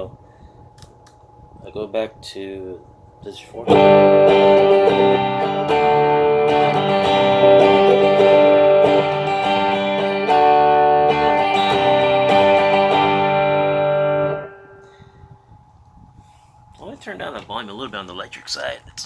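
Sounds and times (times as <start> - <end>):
electric guitar strumming chords: 3.6 - 15.1.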